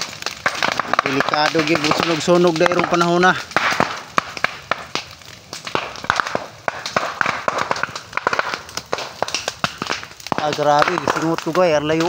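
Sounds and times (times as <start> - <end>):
fire burning bamboo crackling: 0.0 - 12.0.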